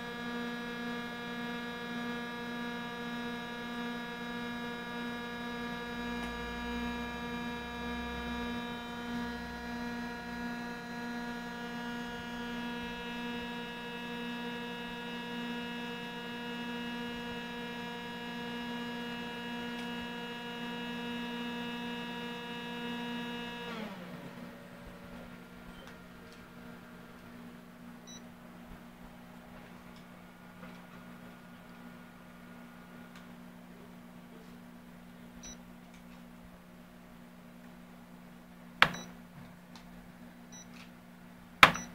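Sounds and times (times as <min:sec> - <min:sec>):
copier buzzing drone: 0:00.0 - 0:25.4.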